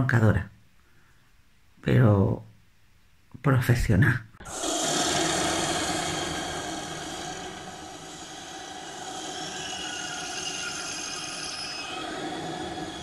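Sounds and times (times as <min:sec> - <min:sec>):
high thin screeching tones: 0:04.4 - 0:13.0.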